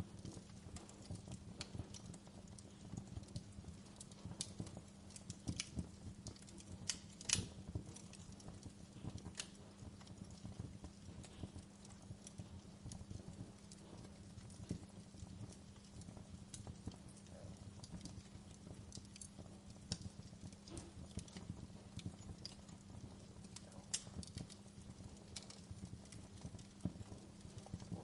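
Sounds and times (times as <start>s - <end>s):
fire crackling: 0.0s - 28.0s
low steady hum: 0.0s - 28.0s.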